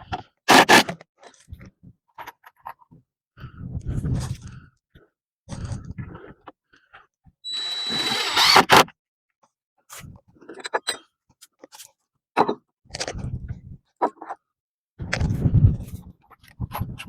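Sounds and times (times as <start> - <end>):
power drill whining: 7.5 - 8.9.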